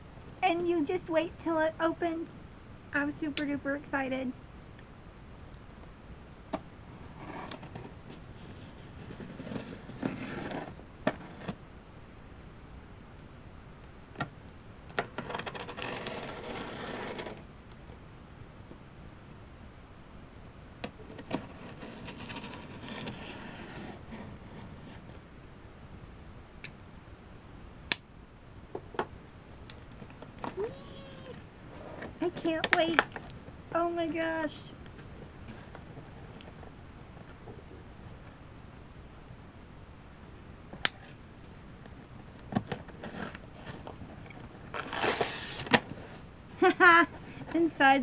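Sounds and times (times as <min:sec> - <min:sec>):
cardboard box scraping and rustling: 0:07.1 - 0:11.6, 0:15.0 - 0:17.4, 0:21.2 - 0:25.1, 0:42.6 - 0:46.3.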